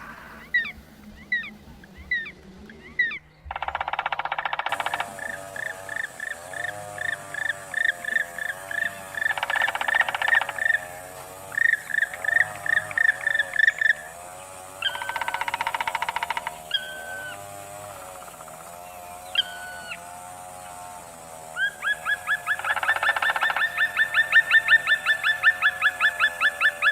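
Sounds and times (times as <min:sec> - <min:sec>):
chorus of lower bird calls: 0:00.0 - 0:26.9
bird buzzy rattle: 0:03.4 - 0:26.9.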